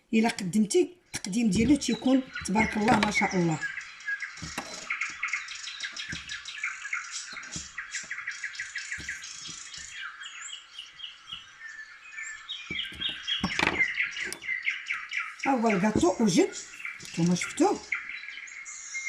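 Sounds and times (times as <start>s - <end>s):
small birds chirping: 0.0s - 19.0s
soft knocks: 4.4s - 5.2s, 5.9s - 6.4s, 8.9s - 10.0s.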